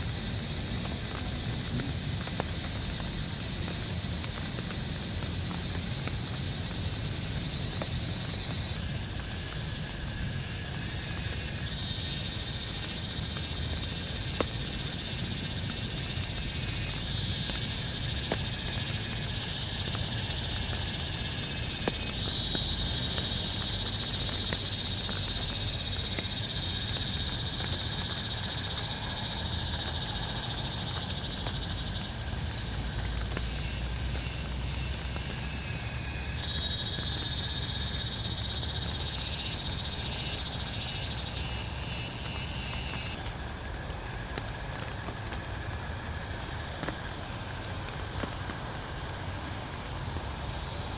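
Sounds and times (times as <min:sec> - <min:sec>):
frogs trilling: 0:00.0 - 0:43.7.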